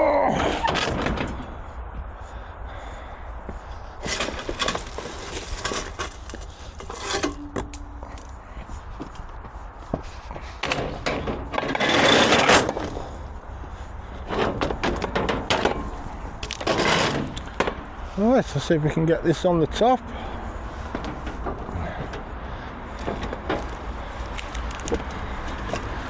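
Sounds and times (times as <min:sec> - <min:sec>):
scrap metal clattering: 0:00.4 - 0:01.6, 0:04.0 - 0:08.6, 0:10.6 - 0:13.4, 0:14.2 - 0:18.2, 0:22.9 - 0:26.0
long rattling scrape: 0:04.0 - 0:08.4, 0:10.6 - 0:13.3, 0:14.2 - 0:17.8.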